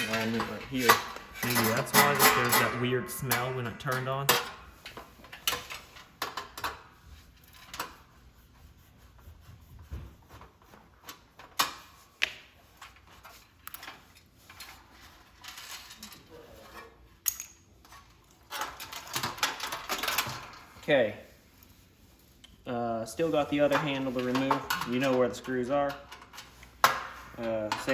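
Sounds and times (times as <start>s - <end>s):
metal clinks and taps: 17.2s - 17.6s.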